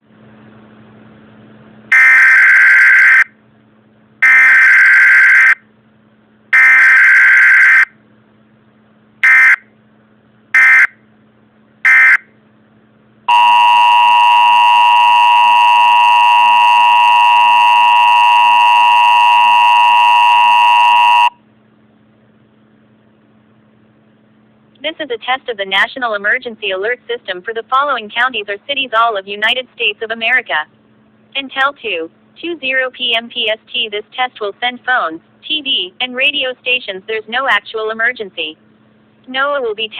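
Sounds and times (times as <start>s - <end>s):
two-tone attention signal: 13.3s - 21.4s.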